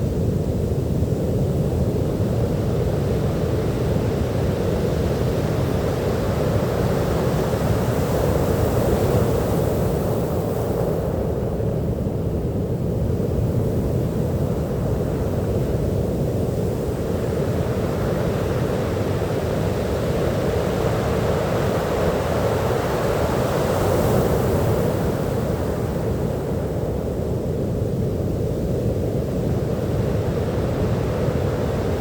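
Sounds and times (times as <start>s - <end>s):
ocean waves washing on beach: 13.1s - 32.0s.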